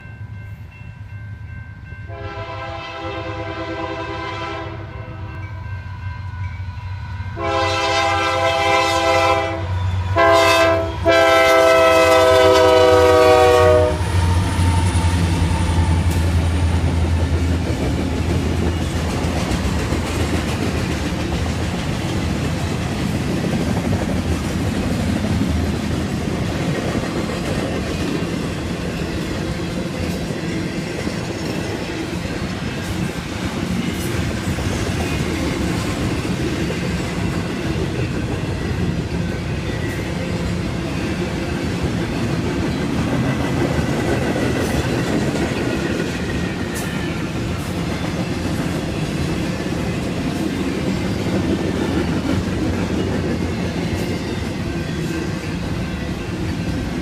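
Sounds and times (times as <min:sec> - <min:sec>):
train cars rumbling on rails: 0:00.0 - 0:57.0
locomotive air horn blasts: 0:02.1 - 0:05.3, 0:07.4 - 0:14.2.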